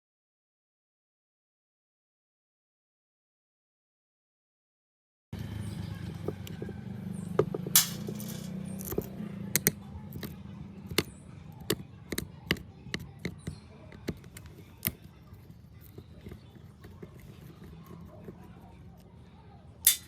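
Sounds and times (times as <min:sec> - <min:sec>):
small hard parts clicking: 0:06.0 - 0:19.0.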